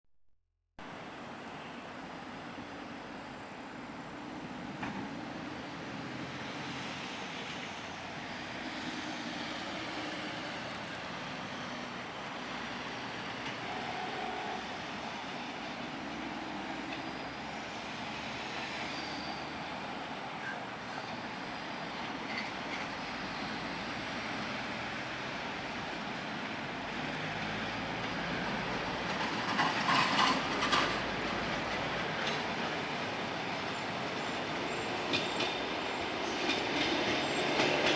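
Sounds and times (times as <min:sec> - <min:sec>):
electric train running on rails: 0:00.8 - 0:37.9
wheels clicking and knocking: 0:29.0 - 0:32.9.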